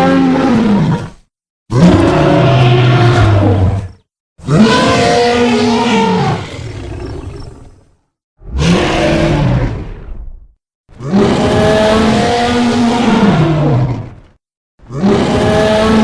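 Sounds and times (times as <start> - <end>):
dinosaur roaring: 0.0 - 10.3.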